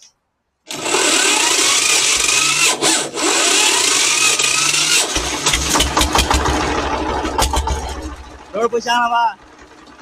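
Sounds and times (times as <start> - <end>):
starter motor cranking: 0.7 - 8.4
diesel engine running: 0.7 - 10.0.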